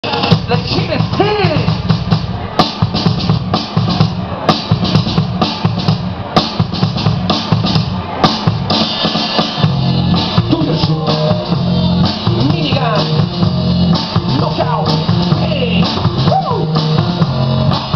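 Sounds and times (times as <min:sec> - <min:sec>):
loud music with drum beat: 0:00.0 - 0:17.9
guitar: 0:08.1 - 0:17.9.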